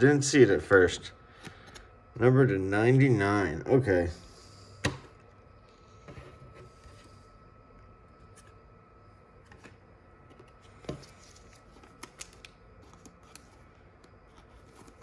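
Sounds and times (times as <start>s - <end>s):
cards sliding: 0.7s - 1.9s.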